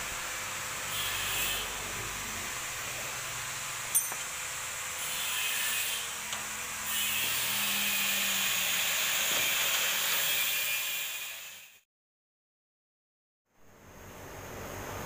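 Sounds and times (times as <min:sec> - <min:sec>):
steady hissing noise: 0:13.5 - 0:15.0.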